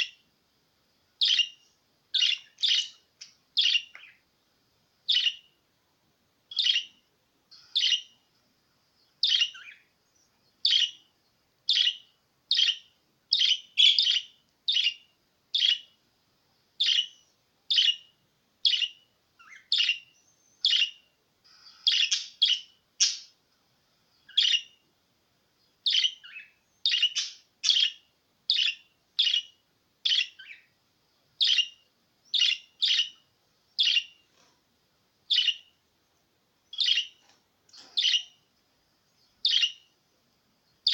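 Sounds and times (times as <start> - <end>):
budgerigar chirping: 1.2 - 1.6, 2.2 - 4.2, 5.1 - 5.5, 6.5 - 8.2, 9.2 - 9.9, 10.6 - 11.0, 11.7 - 15.9, 16.8 - 23.4, 24.3 - 24.8, 25.8 - 30.7, 31.4 - 33.2, 33.8 - 34.2, 35.3 - 35.7, 36.7 - 37.2, 37.8 - 38.4, 39.4 - 39.9.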